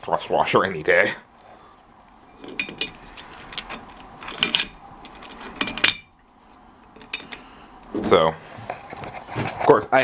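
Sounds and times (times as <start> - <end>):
metallic ring: 2.2 - 6.2, 7.0 - 7.5
steel parts clinking and knocking: 2.3 - 6.2, 6.8 - 7.5.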